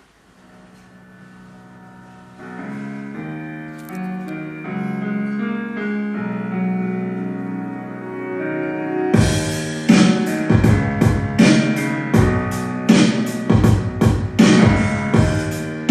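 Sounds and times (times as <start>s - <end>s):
keyboard chords over speaker: 0.0s - 15.9s.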